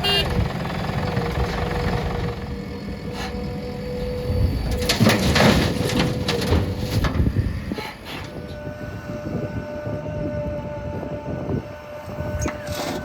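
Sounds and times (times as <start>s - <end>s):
diesel engines rumbling: 0.0s - 13.0s
steady whining tone: 0.0s - 13.0s
rattling and scraping: 4.6s - 8.4s.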